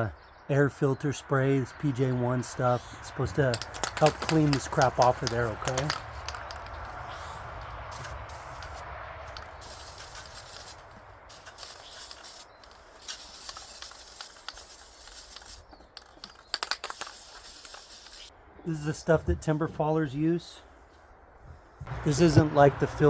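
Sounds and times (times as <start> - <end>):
aerosol can spraying: 7.9 - 15.7, 16.6 - 18.3.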